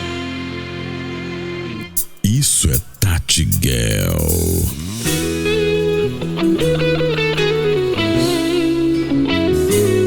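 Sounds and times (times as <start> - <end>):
electric guitar melody: 0.0 - 2.2, 4.9 - 10.0
low bass notes: 1.5 - 10.0.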